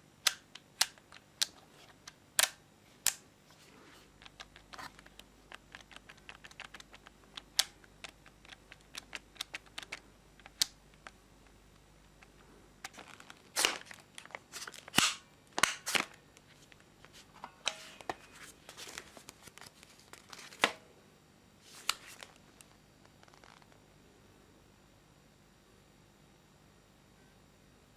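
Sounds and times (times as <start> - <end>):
sharp clicks and snaps: 0.2 - 3.2, 4.2 - 13.7.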